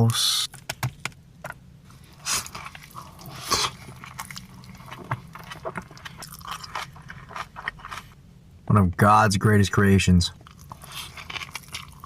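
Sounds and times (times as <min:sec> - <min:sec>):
chewing with crunches: 0:01.9 - 0:08.2, 0:10.4 - 0:12.0.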